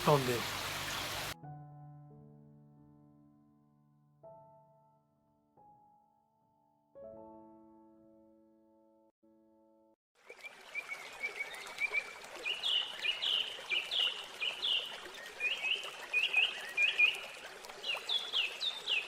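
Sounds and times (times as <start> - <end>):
running water: 0.0 - 1.4, 10.2 - 19.0
small bird chirping: 0.0 - 1.4.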